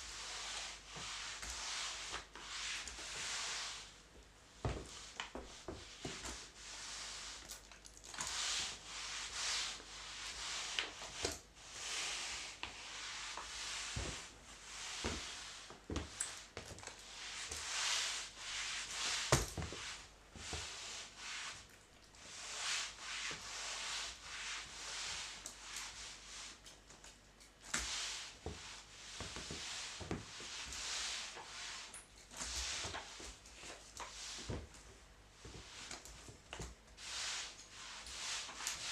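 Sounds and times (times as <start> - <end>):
mop swishing on hard floor: 0.0 - 38.9.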